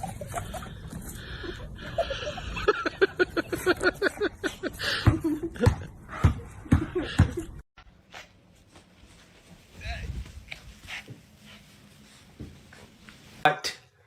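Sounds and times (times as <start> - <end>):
person laughing: 0.0 - 7.6.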